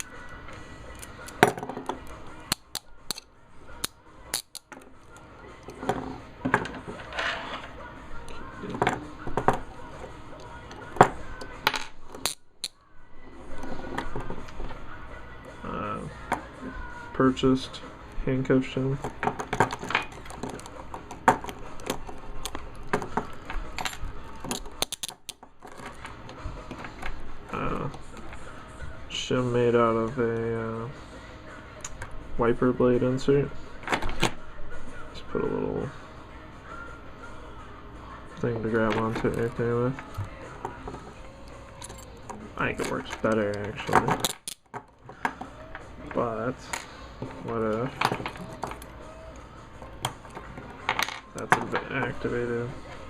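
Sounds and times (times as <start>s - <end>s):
handcuffs clicking: 2.5s - 5.2s, 23.7s - 25.9s, 41.4s - 44.7s.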